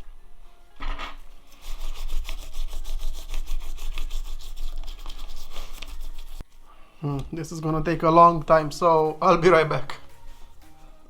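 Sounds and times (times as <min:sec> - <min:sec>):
brush scrubbing plastic: 0:01.4 - 0:06.4.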